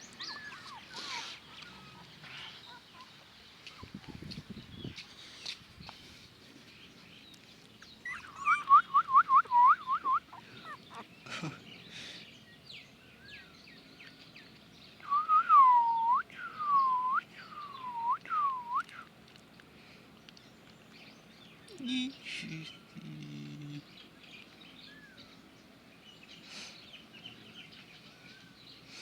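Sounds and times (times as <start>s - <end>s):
puppies whining: 0.1s - 3.1s, 8.0s - 11.1s.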